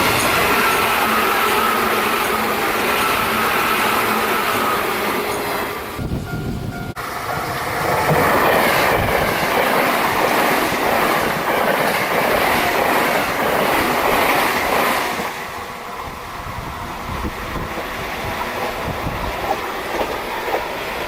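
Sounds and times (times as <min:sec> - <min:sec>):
train wheels clattering: 0:18.5 - 0:21.0.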